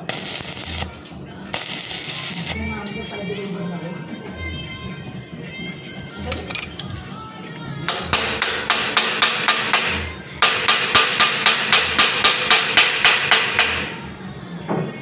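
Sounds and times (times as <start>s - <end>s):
hammer striking steel: 7.9s - 14.0s.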